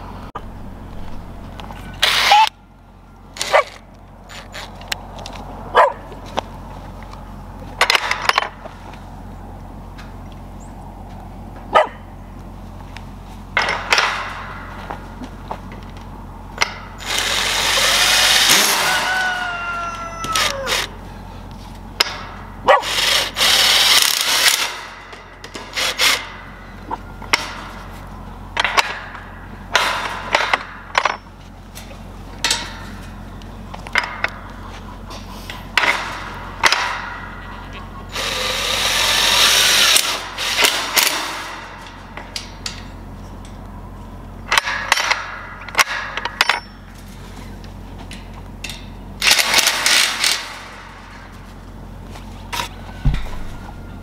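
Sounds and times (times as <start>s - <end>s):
power drill driving screws: 17.0s - 19.2s, 22.8s - 24.8s, 38.1s - 41.2s
metal clanks and taps: 28.6s - 37.8s, 41.8s - 43.7s, 48.0s - 49.0s.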